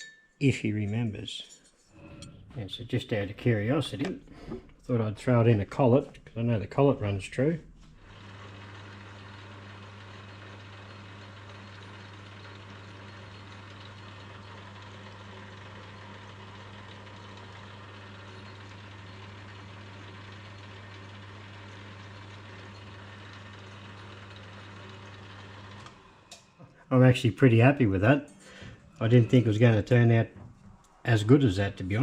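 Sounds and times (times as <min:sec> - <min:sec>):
lathe motor hum and whir: 0:07.0 - 0:26.4.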